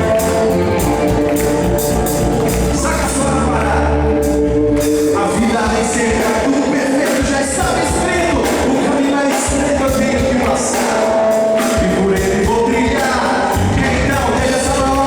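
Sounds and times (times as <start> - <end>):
drums: 0.0 - 15.0
people singing: 0.0 - 15.0
worship band playing: 0.0 - 15.0.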